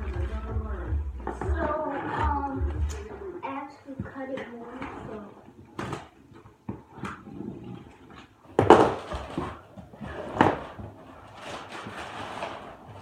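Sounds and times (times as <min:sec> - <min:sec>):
cardboard scraping and rustling: 0:08.5 - 0:13.0.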